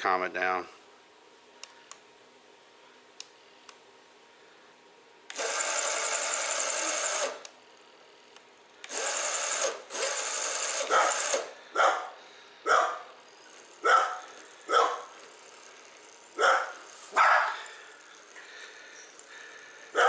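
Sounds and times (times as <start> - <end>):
electric motor whirring: 5.3 - 7.5, 8.8 - 11.6, 13.2 - 20.0.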